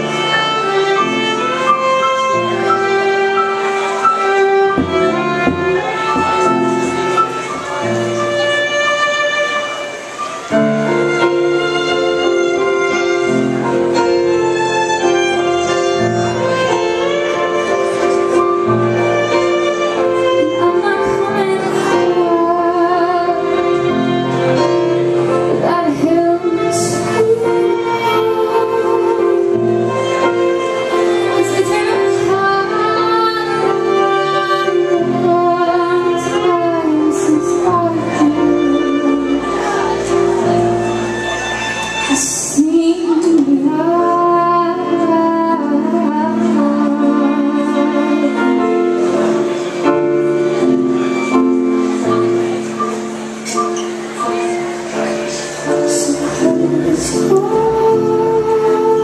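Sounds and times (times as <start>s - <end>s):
band playing live: 0.0s - 59.0s
person singing long notes: 54.2s - 59.0s.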